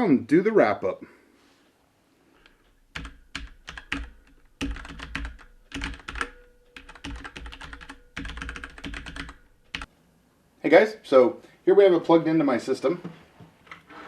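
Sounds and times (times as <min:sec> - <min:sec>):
mechanical keyboard typing: 0:02.9 - 0:09.9.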